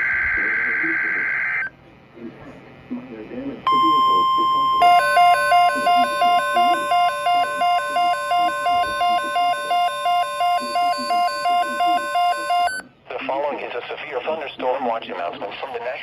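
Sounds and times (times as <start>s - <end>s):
steady alarm tone: 3.7s - 12.8s
two-pitch electronic beeping: 3.7s - 12.8s.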